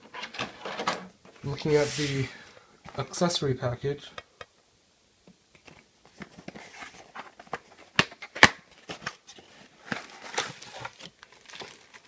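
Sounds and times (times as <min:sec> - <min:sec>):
packaging rustling: 0:05.6 - 0:12.0.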